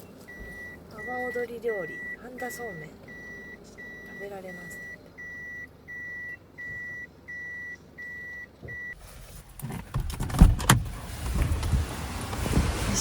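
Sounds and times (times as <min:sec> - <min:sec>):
reversing warning beeper: 0:00.3 - 0:09.0
wind rushing on microphone: 0:10.4 - 0:13.0.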